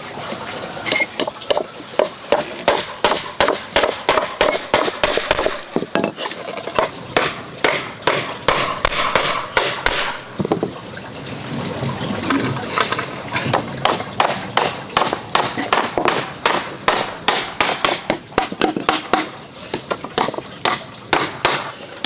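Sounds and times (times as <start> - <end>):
tool striking wood: 0.9 - 6.1, 6.8 - 10.7, 13.8 - 21.7.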